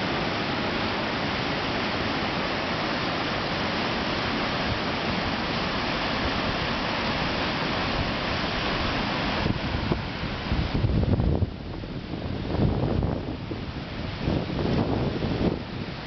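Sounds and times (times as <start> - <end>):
river water rushing: 0.0 - 16.0
wind buffeting microphone: 7.8 - 16.0.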